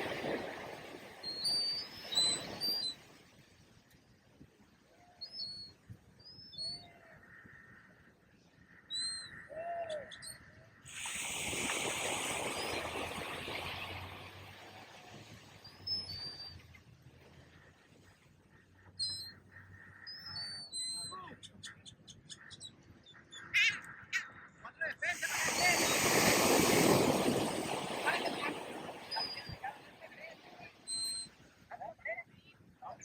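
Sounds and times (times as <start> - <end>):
wave breaking and washing up: 0.0 - 3.3, 10.9 - 16.7, 25.1 - 31.4
birds chirping: 18.5 - 31.3.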